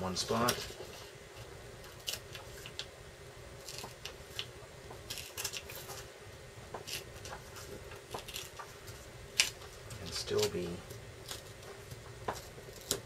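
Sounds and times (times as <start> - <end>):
paper tearing crackles: 0.1 - 1.1, 1.8 - 2.9, 3.6 - 4.5, 5.1 - 6.1, 6.8 - 13.0.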